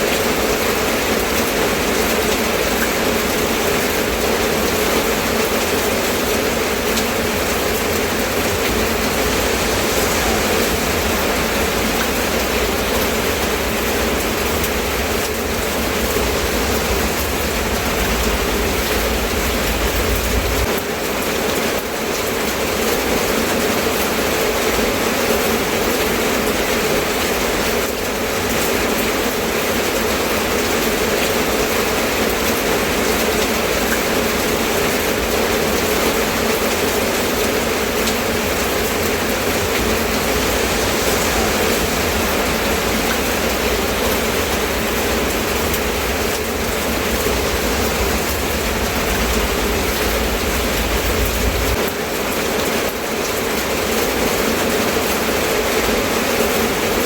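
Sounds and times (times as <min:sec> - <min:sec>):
steady rain: 0:00.0 - 0:57.0
low rumble: 0:03.6 - 0:20.9, 0:37.6 - 0:52.4.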